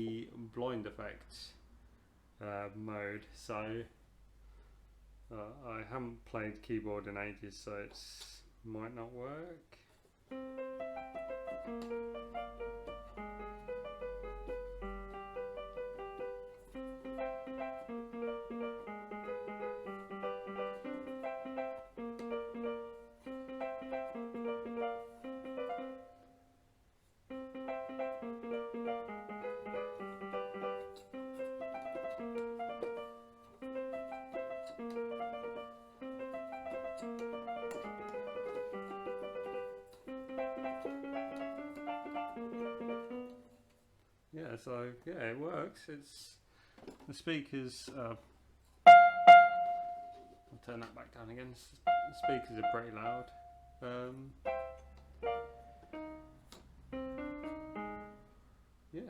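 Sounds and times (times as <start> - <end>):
electronic keyboard piano melody: 10.3 - 26.6, 27.3 - 43.8, 48.8 - 50.5, 51.8 - 58.4.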